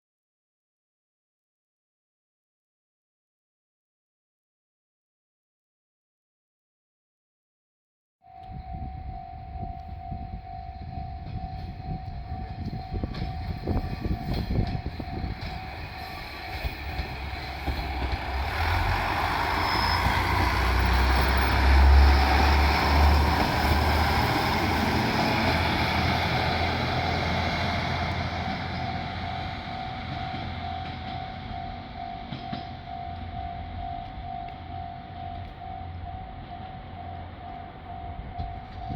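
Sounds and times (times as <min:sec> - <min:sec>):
level-crossing warning bell: 0:08.2 - 0:38.9
train engine and wheel noise: 0:08.3 - 0:38.9.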